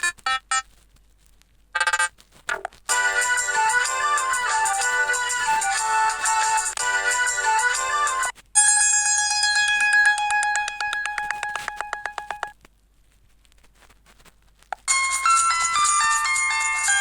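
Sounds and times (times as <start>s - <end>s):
electronic ringtone pulsing: 2.9s - 12.5s, 14.9s - 17.0s
electronic ringtone melody: 2.9s - 12.6s, 14.9s - 17.0s.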